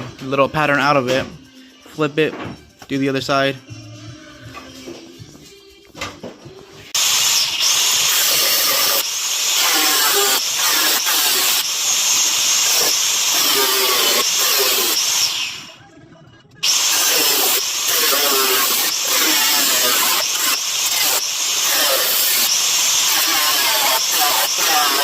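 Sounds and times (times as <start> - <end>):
plasma cutter hissing: 7.0 - 15.4, 16.6 - 25.0.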